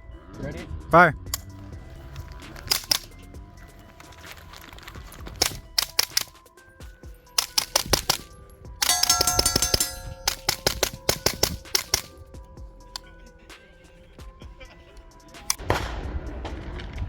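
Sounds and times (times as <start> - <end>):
suppressed gunfire: 2.4 - 3.3, 5.3 - 6.4, 7.3 - 12.4, 15.4 - 16.3
steel targets ringing: 8.8 - 11.7.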